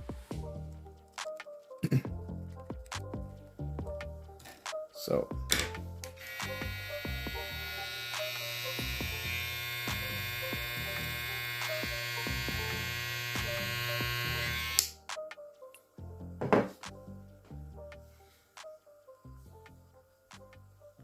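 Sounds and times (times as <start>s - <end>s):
background music: 0.0s - 21.0s
hair trimmer buzzing: 5.5s - 15.0s.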